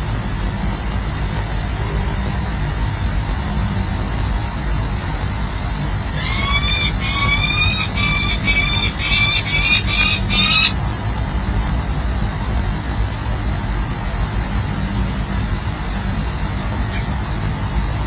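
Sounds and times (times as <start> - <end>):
city traffic rumble: 0.0 - 18.0
falcon harsh calls: 6.1 - 10.8.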